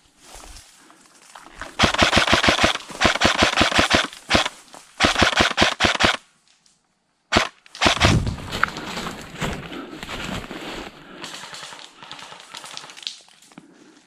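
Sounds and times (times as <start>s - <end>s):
airsoft gun firing bursts: 1.8s - 6.2s, 7.3s - 8.3s.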